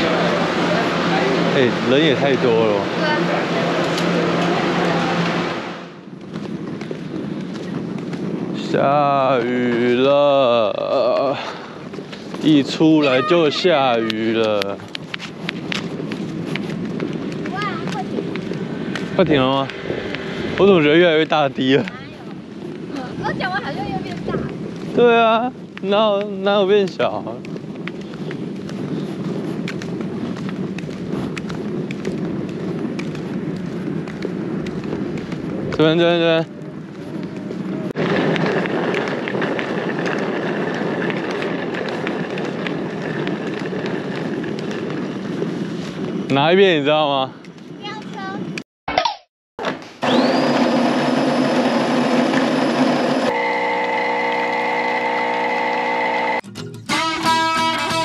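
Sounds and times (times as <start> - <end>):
steady rain falling: 0.0 - 15.0
machine running with high tone: 50.0 - 56.4
machine hum of held tones: 53.0 - 56.4.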